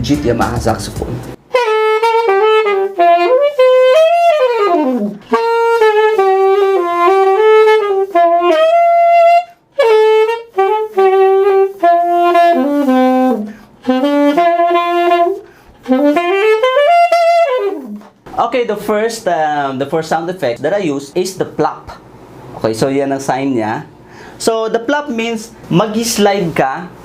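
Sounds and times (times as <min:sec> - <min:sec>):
alto saxophone solo melody: 0:01.4 - 0:18.2.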